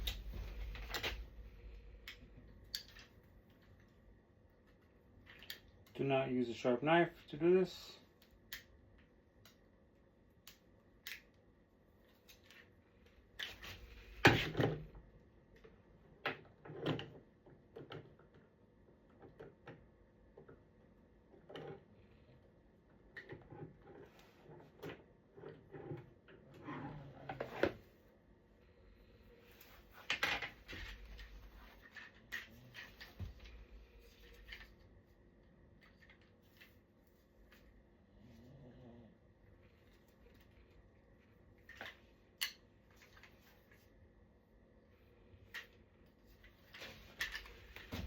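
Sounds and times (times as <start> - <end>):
plastic parts clicking and knocking: 0.0 - 3.9, 4.6 - 5.9, 15.6 - 21.9.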